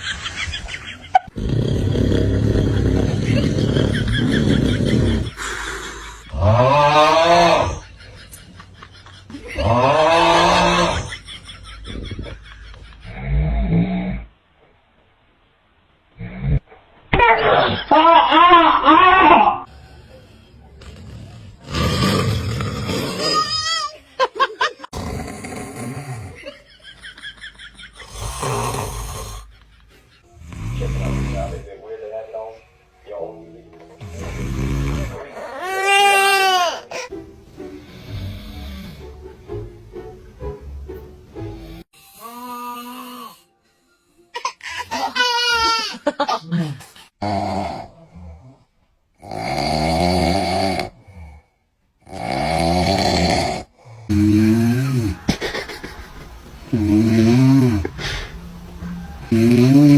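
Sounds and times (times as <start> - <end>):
person snoring: 1.3 - 8.0, 9.5 - 11.1, 19.6 - 23.6, 24.9 - 26.7, 28.0 - 29.5, 30.3 - 31.7, 34.0 - 37.1, 37.8 - 39.2, 41.4 - 43.6, 46.5 - 59.9.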